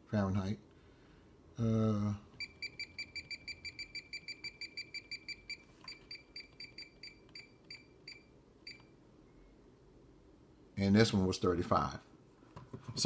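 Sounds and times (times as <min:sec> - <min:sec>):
multimeter short high beeps: 0:02.4 - 0:08.9.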